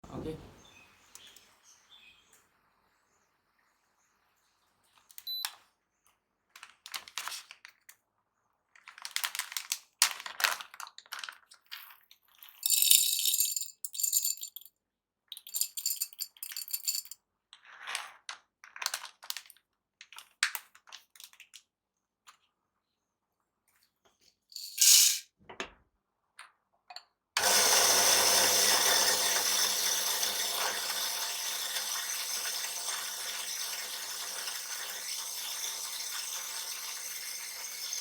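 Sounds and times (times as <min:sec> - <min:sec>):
metal coffee gear clinking: 0:12.6 - 0:14.7, 0:15.4 - 0:17.2, 0:24.6 - 0:25.2.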